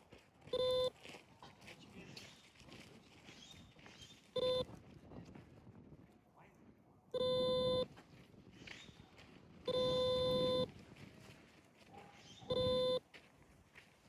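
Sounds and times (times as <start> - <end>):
collar beeping: 0.6 - 0.9, 4.4 - 4.6, 7.2 - 7.9, 9.7 - 10.7, 12.5 - 13.0.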